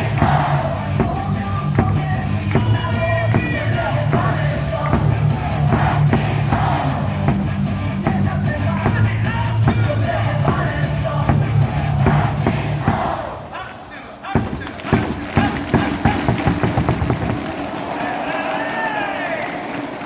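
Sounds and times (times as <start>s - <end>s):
crowd singing a cheer song: 0.0s - 16.0s
loudspeaker music with steady beat: 0.0s - 17.4s.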